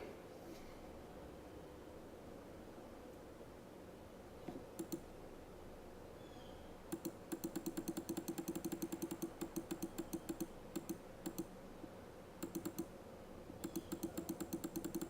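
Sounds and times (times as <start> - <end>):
rapid light clicking: 4.8 - 5.1, 6.9 - 11.5, 12.4 - 12.9, 13.6 - 15.0.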